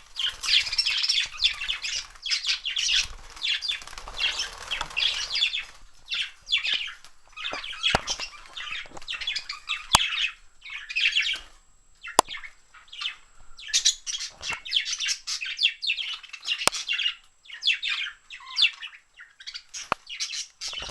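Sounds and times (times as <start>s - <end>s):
budgerigars chattering and chirping: 0.0s - 20.9s
sharp clicks: 7.5s - 9.1s, 16.6s - 16.8s.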